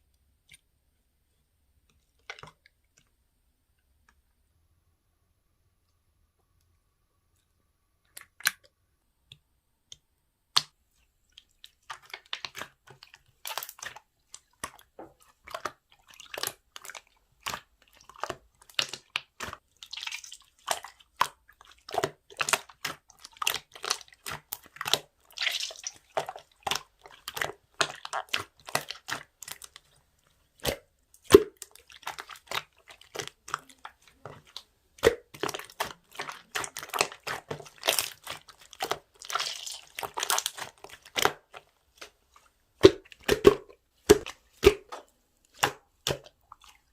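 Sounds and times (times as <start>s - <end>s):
slime squished by hand: 11.4s - 42.2s, 42.8s - 46.9s.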